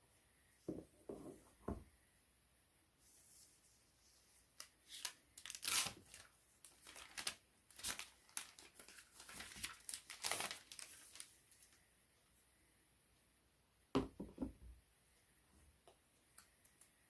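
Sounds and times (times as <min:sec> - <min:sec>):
packaging rustling and crackling: 0:04.6 - 0:11.8.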